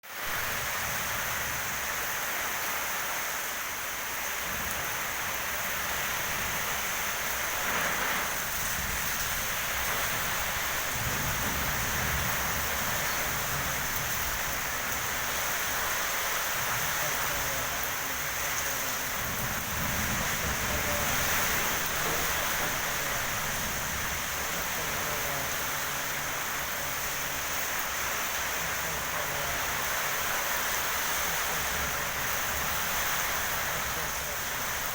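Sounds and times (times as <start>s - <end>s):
heavy rain hissing: 0.0s - 34.9s
strong wind gusting: 5.6s - 27.5s.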